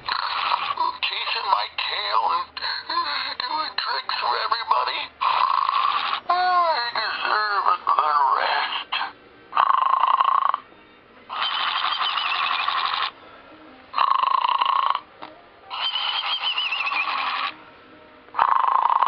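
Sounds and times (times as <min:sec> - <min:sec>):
toy dog snoring and whistling: 0:00.1 - 0:01.3, 0:05.2 - 0:06.2, 0:08.9 - 0:10.6, 0:11.3 - 0:13.1, 0:14.0 - 0:15.0, 0:15.7 - 0:17.6, 0:18.4 - 0:19.0.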